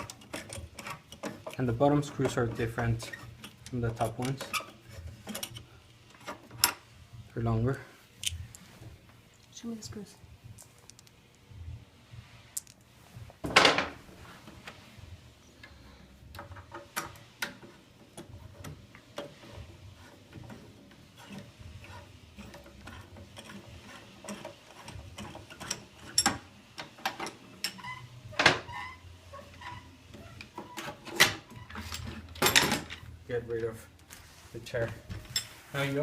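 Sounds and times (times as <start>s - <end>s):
chair parts clicking and knocking: 0.0s - 6.9s, 12.6s - 14.8s, 15.6s - 33.8s.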